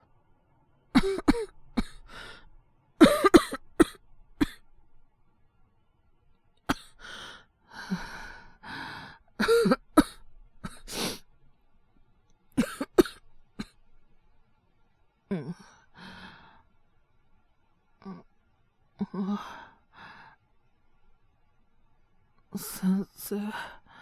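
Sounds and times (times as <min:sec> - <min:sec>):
man coughing: 0:01.0 - 0:02.0, 0:03.0 - 0:04.6, 0:06.7 - 0:06.9, 0:09.4 - 0:10.9, 0:12.6 - 0:13.2
heavy breathing: 0:01.9 - 0:02.5, 0:06.8 - 0:09.6.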